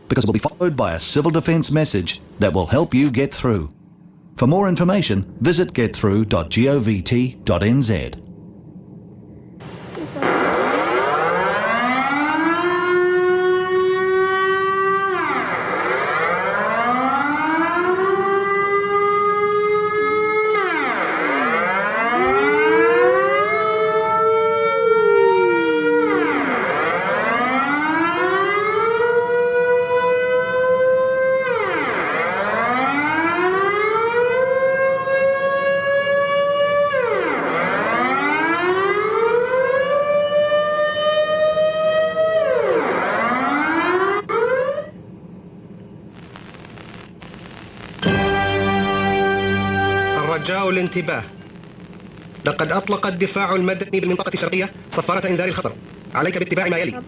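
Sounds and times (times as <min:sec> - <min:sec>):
warning siren wailing: 0:10.2 - 0:45.0
second siren tone gliding: 0:10.2 - 0:45.6.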